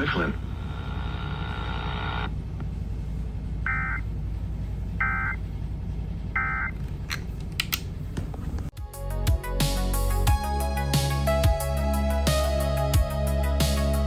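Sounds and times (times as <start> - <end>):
low radio hum: 0.0 - 8.7.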